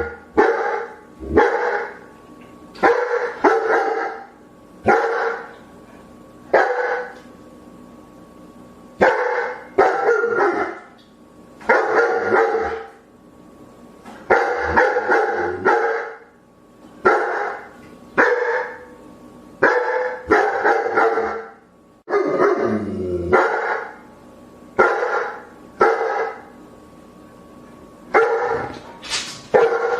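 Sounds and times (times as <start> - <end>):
dog barking: 0.0 - 2.0, 2.8 - 5.6, 6.5 - 7.2, 9.0 - 10.9, 11.6 - 13.0, 14.2 - 16.3, 17.0 - 18.9, 19.6 - 22.7, 23.3 - 24.0, 24.8 - 26.5, 28.1 - 28.8, 29.5 - 29.9.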